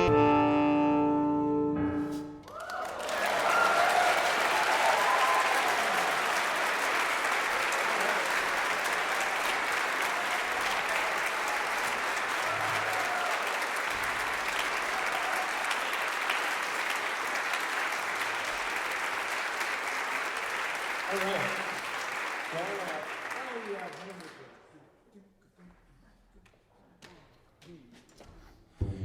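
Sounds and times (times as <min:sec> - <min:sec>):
audience applauding: 0:02.4 - 0:24.7.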